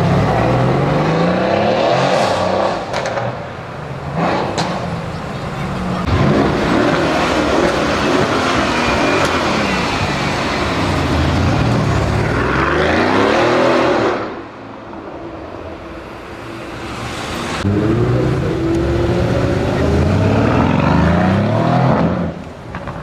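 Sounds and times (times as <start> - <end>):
car engine revving hard: 17.6 - 22.3.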